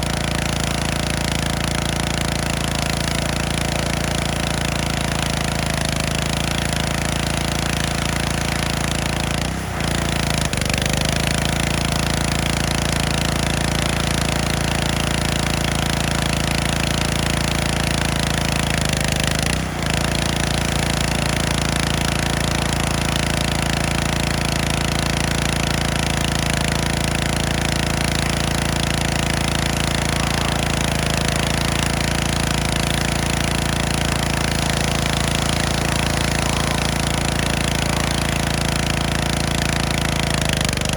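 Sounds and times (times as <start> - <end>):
pressure washer engine running: 0.0 - 40.9
high-pressure spray hiss: 29.2 - 39.7.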